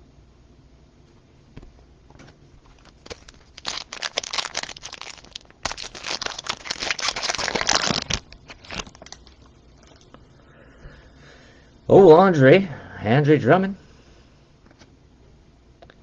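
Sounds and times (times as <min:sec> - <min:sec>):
plastic packaging crinkling: 0:02.1 - 0:10.2.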